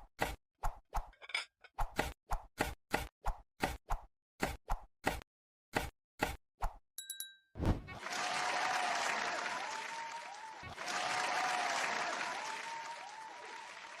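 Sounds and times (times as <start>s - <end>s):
crowd applauding: 8.0s - 14.0s.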